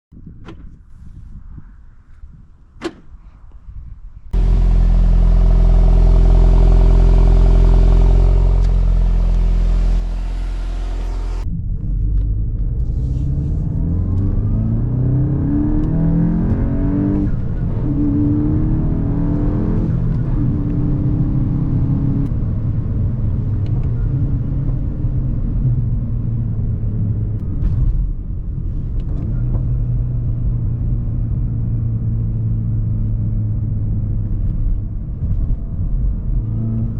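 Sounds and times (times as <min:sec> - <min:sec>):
car engine idling: 0:04.4 - 0:11.5
car engine accelerating: 0:04.4 - 0:36.9.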